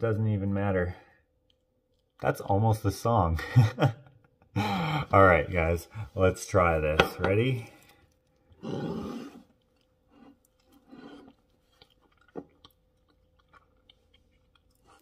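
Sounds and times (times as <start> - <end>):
person biting and chewing: 8.4 - 15.0.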